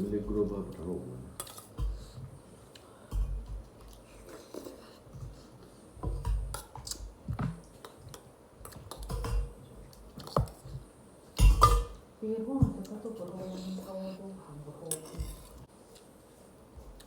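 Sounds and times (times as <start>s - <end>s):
chewing and picking at chicken: 0.3s - 10.9s, 14.9s - 17.0s.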